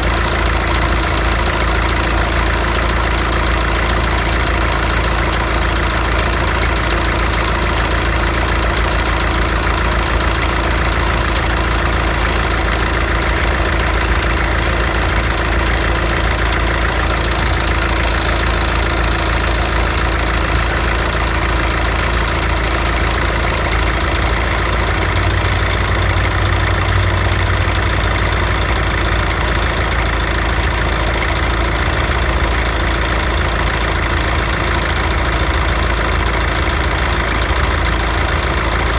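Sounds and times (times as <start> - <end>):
alternator belt drive noise: 0.0 - 38.9
car engine idling: 0.0 - 38.9.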